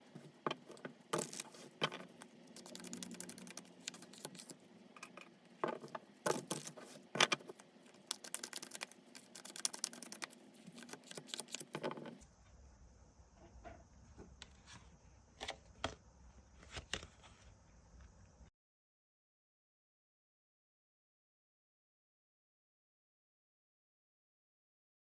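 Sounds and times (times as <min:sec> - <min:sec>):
cards being shuffled: 0:00.7 - 0:04.6, 0:05.8 - 0:12.2.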